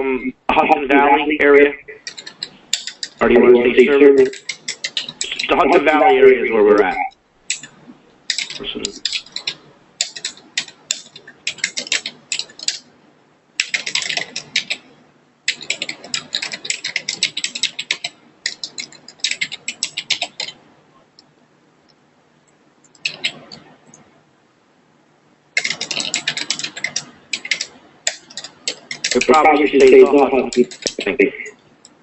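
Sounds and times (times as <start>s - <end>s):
fast keyboard typing: 2.0s - 6.2s, 6.8s - 12.9s, 13.6s - 14.9s, 15.5s - 20.6s, 22.9s - 24.0s, 25.6s - 31.2s.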